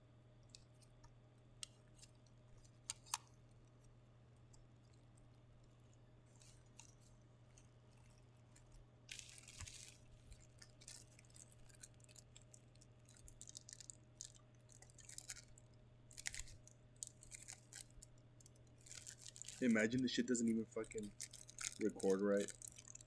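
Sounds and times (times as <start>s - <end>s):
packaging crinkling: 6.3s - 23.0s
steady low hum: 19.5s - 22.7s.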